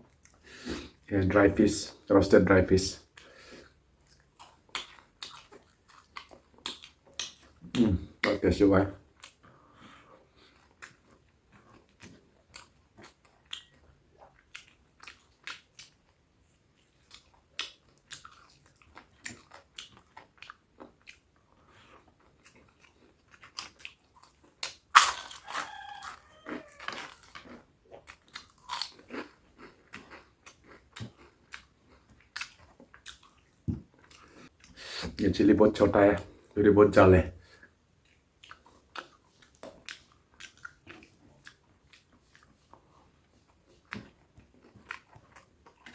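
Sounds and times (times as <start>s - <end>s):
chewing: 0.1s - 1.1s, 3.0s - 8.4s, 9.0s - 35.2s, 37.5s - 45.9s
wet mouth clicks: 4.1s - 8.4s
crunchy bites: 24.5s - 31.7s.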